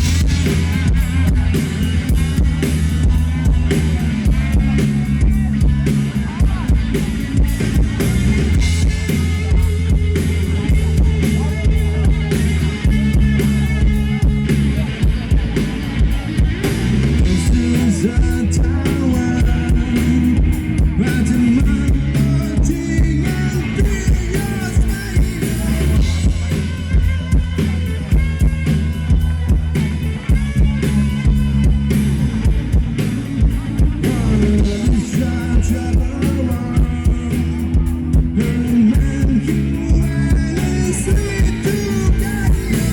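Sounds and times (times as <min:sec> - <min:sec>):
bass guitar: 0:00.0 - 0:42.9
drum kit: 0:00.0 - 0:42.9
electric guitar: 0:00.0 - 0:42.9
person singing: 0:17.2 - 0:26.6, 0:33.9 - 0:42.9.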